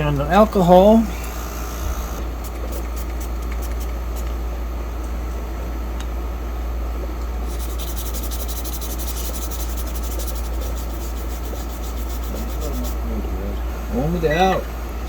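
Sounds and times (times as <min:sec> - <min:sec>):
steady low hum: 0:00.0 - 0:15.0
small brush scrubbing: 0:07.5 - 0:13.0.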